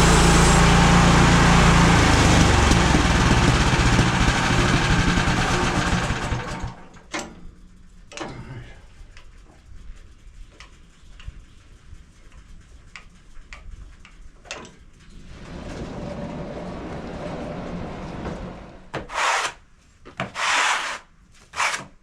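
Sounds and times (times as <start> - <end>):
sawmill running: 0.0 - 7.0
wooden scraping: 15.2 - 19.6, 20.2 - 21.9.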